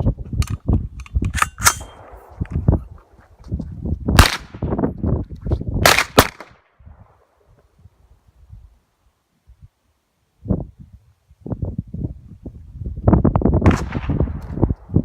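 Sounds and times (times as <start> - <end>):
metallic gun clicks: 0.4 - 2.2
gunshots: 4.2 - 4.6, 5.8 - 6.6.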